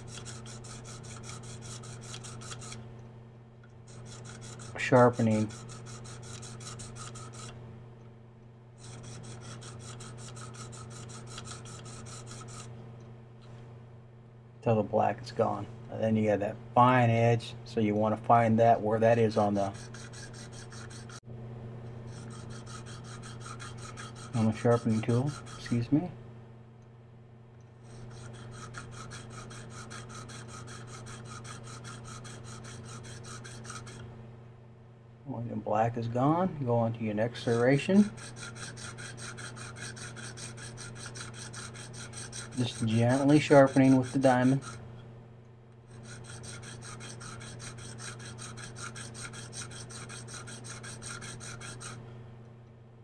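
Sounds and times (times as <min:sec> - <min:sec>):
sharpening rod rubbing on knife: 0:00.0 - 0:02.8, 0:03.9 - 0:07.6, 0:08.8 - 0:12.7, 0:19.6 - 0:21.2, 0:22.0 - 0:25.9, 0:27.8 - 0:34.0, 0:37.4 - 0:44.8, 0:45.9 - 0:52.0.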